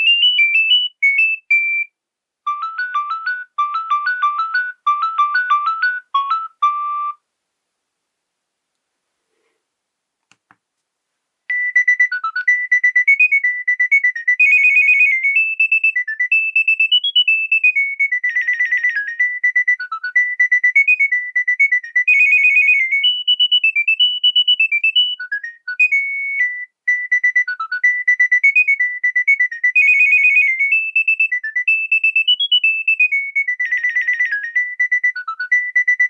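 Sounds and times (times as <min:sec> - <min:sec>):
polyphonic ringtone melody: 0:00.0 - 0:01.9, 0:02.5 - 0:07.2, 0:11.5 - 0:20.4, 0:22.0 - 0:25.2, 0:29.8 - 0:36.0.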